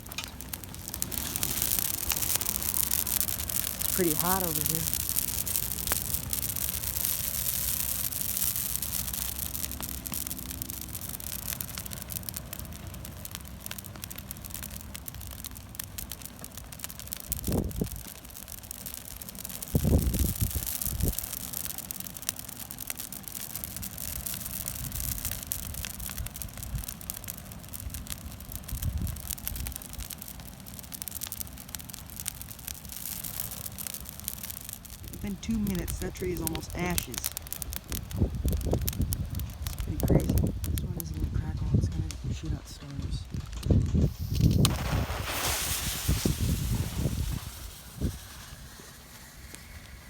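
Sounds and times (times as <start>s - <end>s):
bonfire crackling and hissing: 0.0s - 50.0s
wind buffeting microphone: 17.3s - 18.1s, 19.7s - 21.2s, 37.0s - 48.8s.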